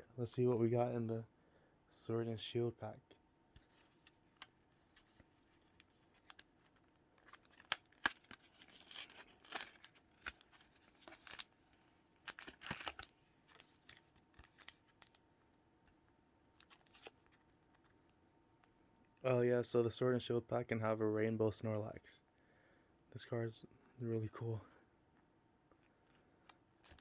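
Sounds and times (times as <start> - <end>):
foil wrapper crinkling: 3.6 - 15.2, 16.6 - 17.9, 26.7 - 27.0.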